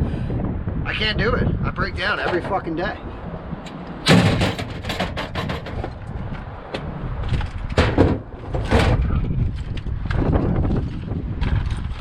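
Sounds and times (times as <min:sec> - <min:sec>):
steady low rumble: 0:00.0 - 0:12.0
knocks and clatters: 0:03.7 - 0:09.3.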